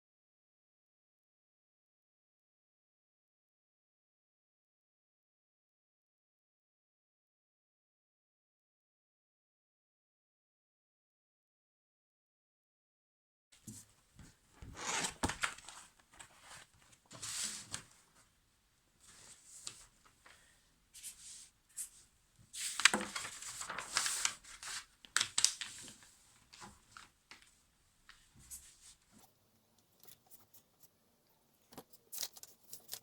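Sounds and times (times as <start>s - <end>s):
rustling and tearing: 22.6s - 27.5s.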